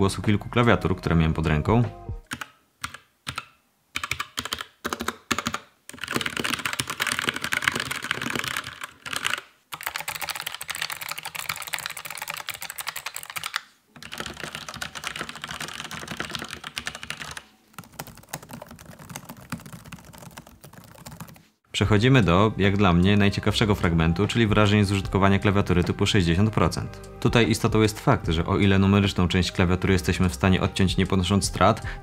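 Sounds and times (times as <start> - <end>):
rapid keyboard typing clatter: 2.3 - 21.4.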